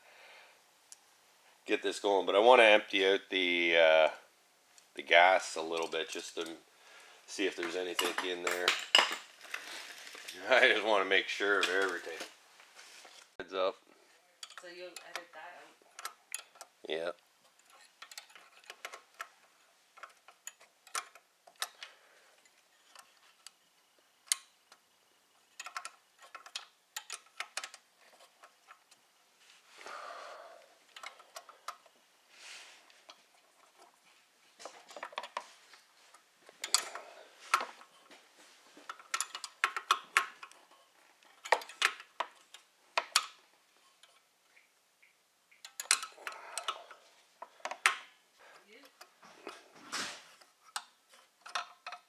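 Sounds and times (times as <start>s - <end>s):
scraping and rustling: 7.4s - 13.4s, 48.5s - 51.8s
metal parts clinking on workbench: 7.6s - 9.6s.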